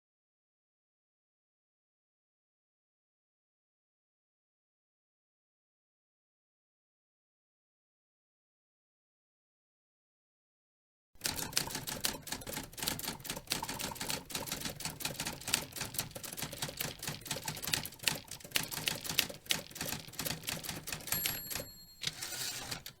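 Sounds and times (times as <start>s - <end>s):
typewriter bell ringing: 11.2s - 23.0s
typewriter carriage rasp: 11.2s - 23.0s
typewriter key strikes: 11.2s - 23.0s.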